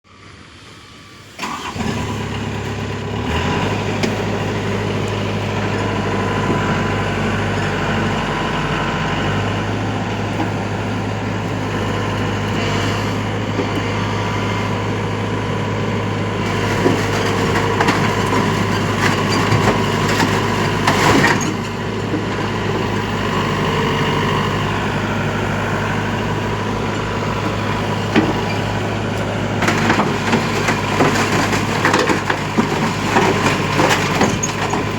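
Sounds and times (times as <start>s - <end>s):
excavator engine running: 0.1s - 34.9s.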